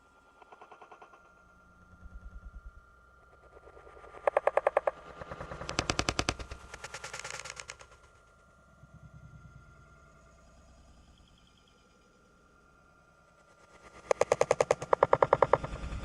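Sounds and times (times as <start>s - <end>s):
rapid clattering rattle: 4.2s - 7.9s, 13.9s - 16.0s.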